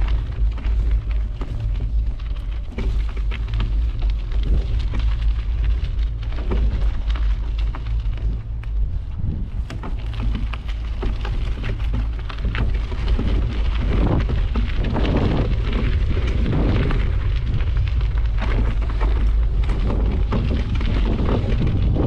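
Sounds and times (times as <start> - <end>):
bike rattling and clicking: 0.0 - 22.0
tyres crunching on dirt: 0.0 - 22.0
wind rumble on microphone: 0.0 - 22.0.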